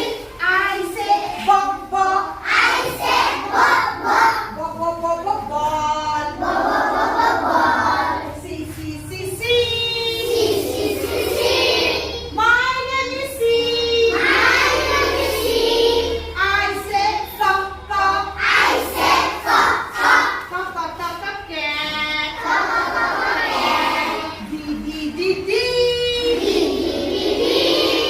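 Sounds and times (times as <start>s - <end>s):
children singing: 0.0s - 4.6s, 6.2s - 8.4s, 10.0s - 12.4s, 13.8s - 20.5s, 22.3s - 24.5s, 25.9s - 28.0s.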